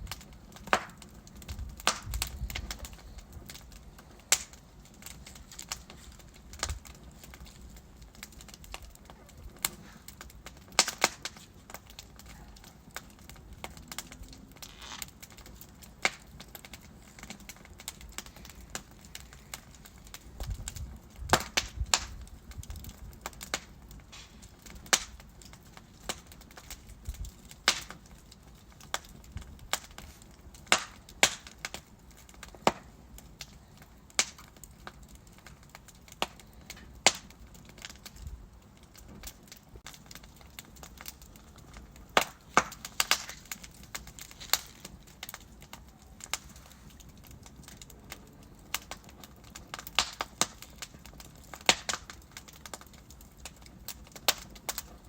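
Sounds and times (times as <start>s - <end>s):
fire rumbling flare-ups: 0.0s - 55.0s
wood fire crackling and popping: 0.0s - 55.0s
fire rushing hiss: 24.0s - 24.6s.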